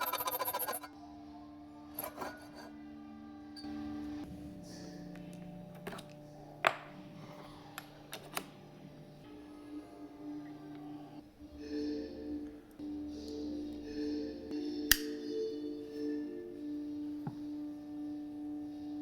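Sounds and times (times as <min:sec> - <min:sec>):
wood rubbing: 0:00.0 - 0:00.9
steady low hum: 0:03.6 - 0:19.0.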